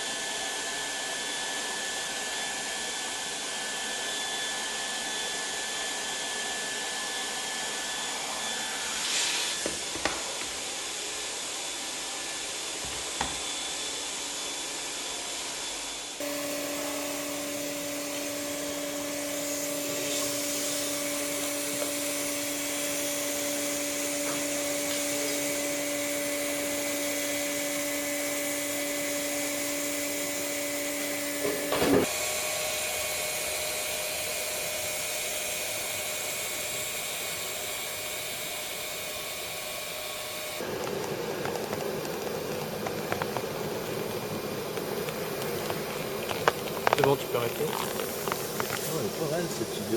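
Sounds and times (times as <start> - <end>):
hot-air blower rushing: 0.0 - 49.9.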